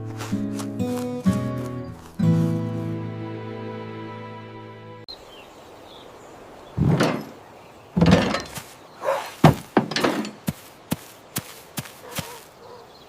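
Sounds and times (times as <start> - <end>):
held music chord: 0.0 - 5.1
dull thumps and knocks: 6.8 - 7.4, 8.0 - 12.4.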